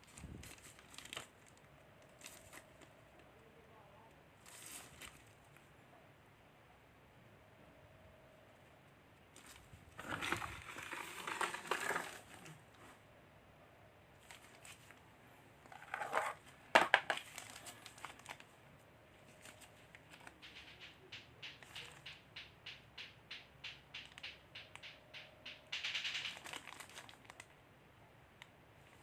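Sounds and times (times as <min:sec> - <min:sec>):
packaging crinkling and rustling: 0:00.0 - 0:03.2, 0:04.4 - 0:05.6, 0:09.4 - 0:12.6, 0:14.2 - 0:15.0, 0:15.7 - 0:18.5, 0:19.2 - 0:20.8, 0:26.2 - 0:27.5.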